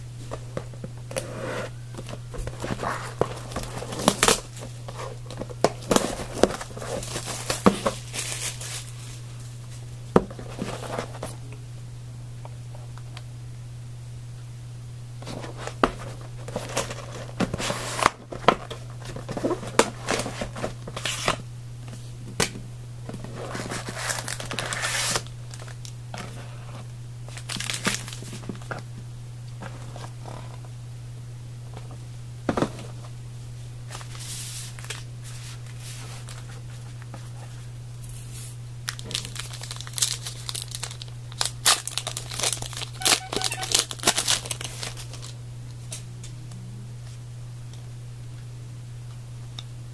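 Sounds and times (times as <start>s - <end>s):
plastic wrapping tearing and crinkling: 2.5s - 9.2s, 23.3s - 26.0s, 27.3s - 28.7s, 33.9s - 35.1s, 38.9s - 45.4s
low hum: 42.2s - 49.9s.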